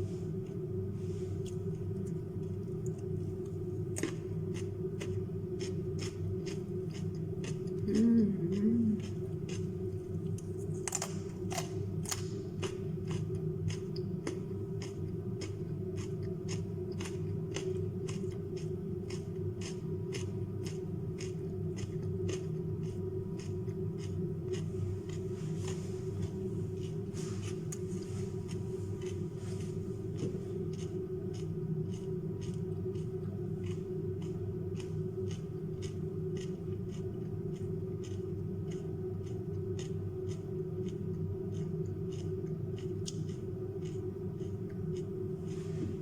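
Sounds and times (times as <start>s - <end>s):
crunching and chewing raw vegetables: 0.1s - 46.0s.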